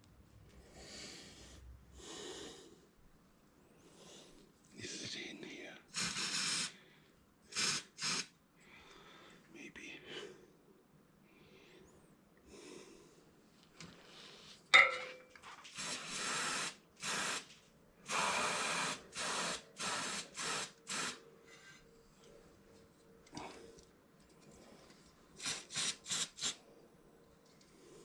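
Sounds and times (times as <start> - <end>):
aerosol spray can hissing: 5.9 - 6.8, 7.5 - 8.3, 15.7 - 17.5, 18.1 - 21.2.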